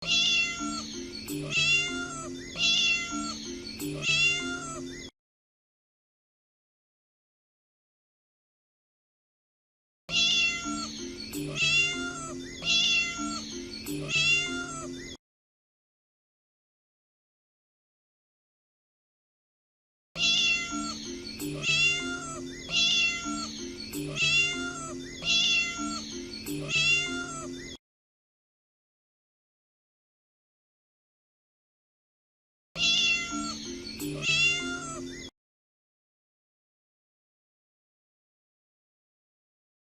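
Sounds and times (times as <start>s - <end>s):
kitten meowing: 0.0s - 5.1s, 10.1s - 15.2s, 20.2s - 27.8s, 32.8s - 35.3s
background music: 0.1s - 5.1s, 10.2s - 15.1s, 20.3s - 27.8s, 32.9s - 35.3s.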